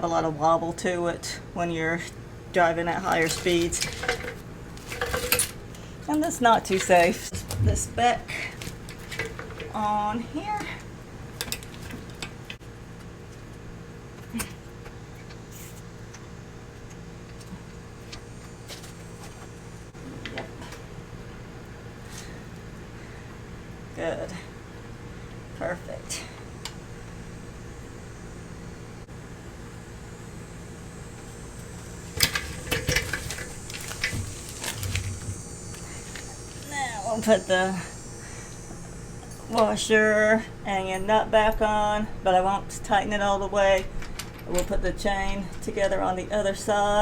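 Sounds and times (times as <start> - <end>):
steady low hum: 0.0 - 47.0
metal tools clinking: 3.0 - 7.3, 8.6 - 9.8, 32.1 - 36.2.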